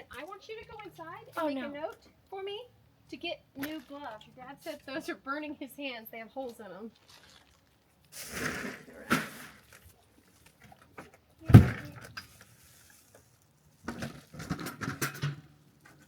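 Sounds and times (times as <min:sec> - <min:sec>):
loud thump: 0:11.5 - 0:12.0
objects knocking and clattering: 0:13.8 - 0:16.0.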